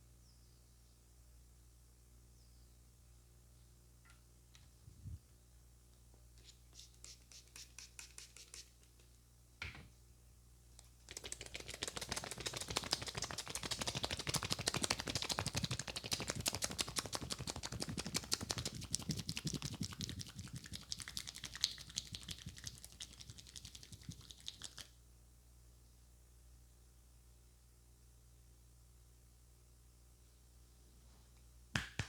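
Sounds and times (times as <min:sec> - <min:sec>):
hands tapping and scratching on head: 0:11.1 - 0:24.9, 0:31.8 - 0:32.0.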